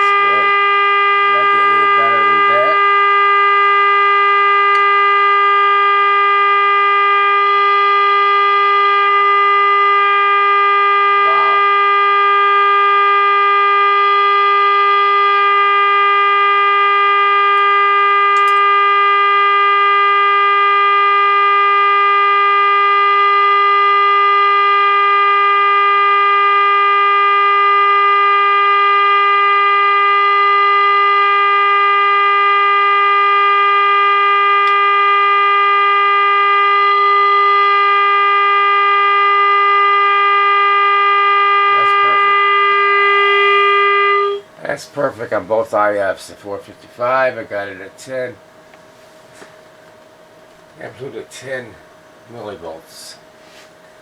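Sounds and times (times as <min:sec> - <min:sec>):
steady test tone from radio speaker: 0:00.0 - 0:54.0.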